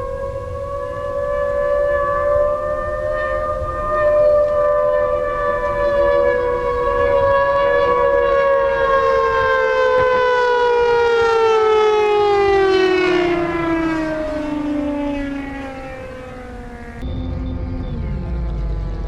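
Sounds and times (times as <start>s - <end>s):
model plane siren wailing: 0.0s - 19.0s.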